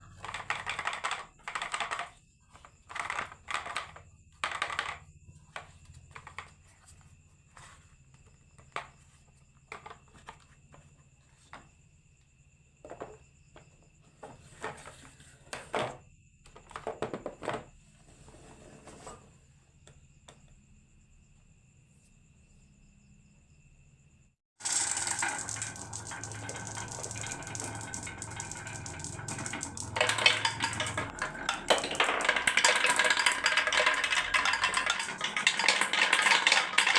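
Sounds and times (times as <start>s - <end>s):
marbles clattering down wooden run: 0.2s - 6.5s, 24.6s - 36.9s.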